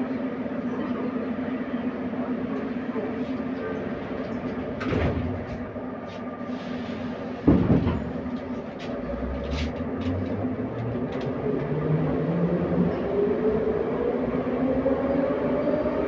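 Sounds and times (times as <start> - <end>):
metro car running noise: 0.0 - 16.0.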